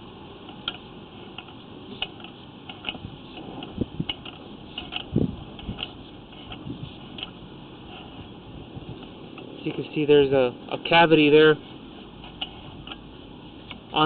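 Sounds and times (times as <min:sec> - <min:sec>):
steady hum: 0:00.0 - 0:14.0.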